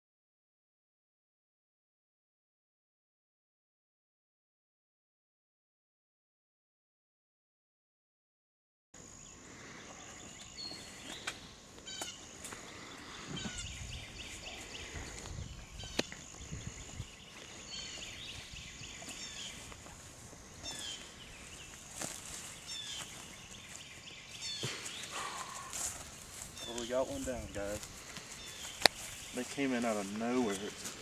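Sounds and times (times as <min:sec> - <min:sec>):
songbirds chirping and singing: 0:09.2 - 0:31.0
rustling in leaves: 0:10.6 - 0:31.0.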